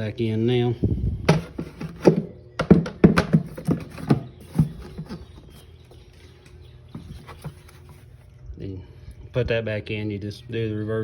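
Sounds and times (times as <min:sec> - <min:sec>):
plastic box knocking against frame: 0:01.3 - 0:05.0.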